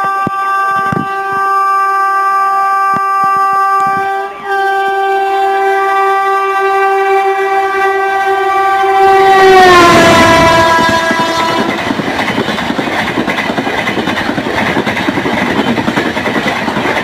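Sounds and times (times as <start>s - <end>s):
train horn blast: 0.0s - 12.0s
train rushing past: 6.6s - 17.0s.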